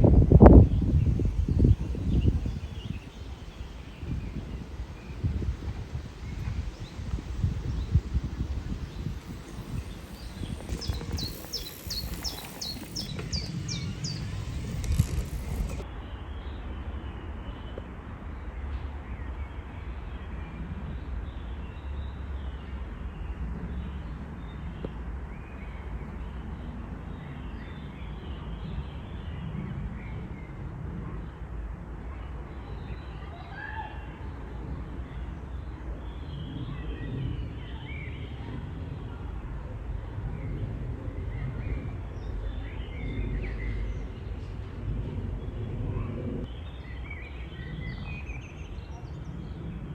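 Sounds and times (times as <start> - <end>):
bird chirping: 6.1 - 15.8
low steady rumble: 38.2 - 46.5.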